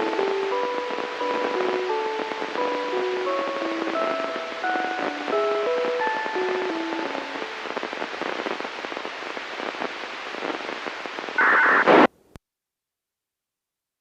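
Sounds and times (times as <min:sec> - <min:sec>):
radio static hiss: 0:00.0 - 0:12.4
signal tone burst: 0:11.4 - 0:12.1.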